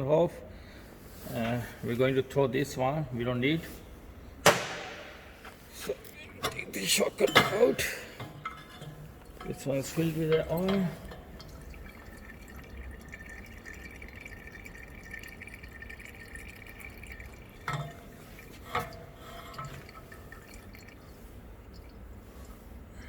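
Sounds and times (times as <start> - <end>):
hydraulic oil dripping: 4.2 - 23.0
sharp knocks: 4.4 - 5.3.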